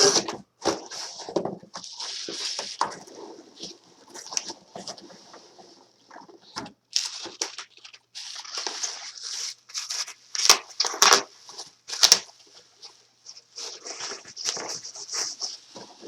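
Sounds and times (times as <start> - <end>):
packing material rustling: 0.0 - 16.0.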